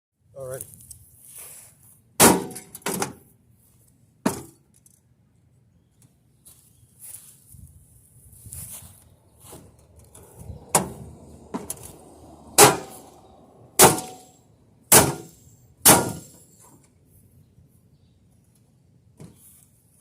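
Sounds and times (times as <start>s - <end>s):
tool hammering sheet metal: 12.6s - 13.0s, 13.8s - 14.3s, 14.9s - 16.4s.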